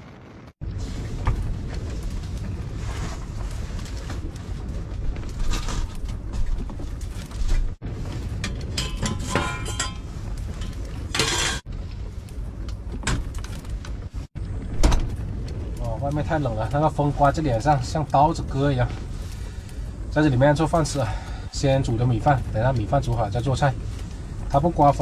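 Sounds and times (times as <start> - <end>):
wind buffeting microphone: 0.0 - 25.0
clinks and short rattles: 8.4 - 11.7.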